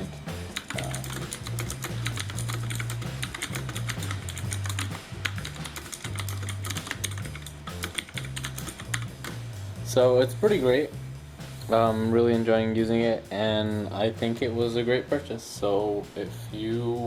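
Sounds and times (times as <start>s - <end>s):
background music with bass: 0.0s - 17.0s
mechanical keyboard typing: 0.5s - 9.4s.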